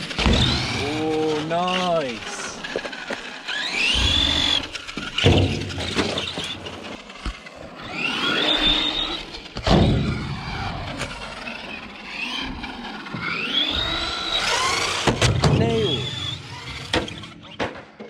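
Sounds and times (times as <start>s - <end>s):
tyre noise on ground: 0.0s - 7.4s
electric motor whining: 0.0s - 17.6s
toy van landing thuds: 0.1s - 0.8s, 4.0s - 6.7s, 13.8s - 15.6s.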